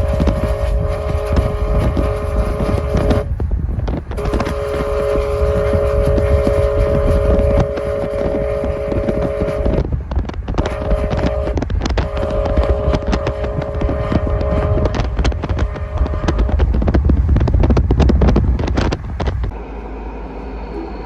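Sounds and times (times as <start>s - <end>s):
locomotive air horn blasts: 0.0s - 3.4s, 4.1s - 16.9s
wind on microphone: 0.0s - 19.6s
heavy low rumble: 0.0s - 21.0s.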